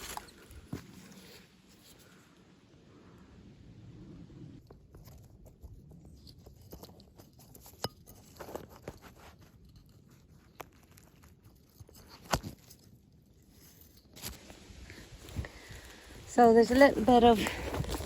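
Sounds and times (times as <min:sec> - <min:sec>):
footsteps crunching leaves and twigs: 0:00.0 - 0:02.0, 0:14.2 - 0:18.0.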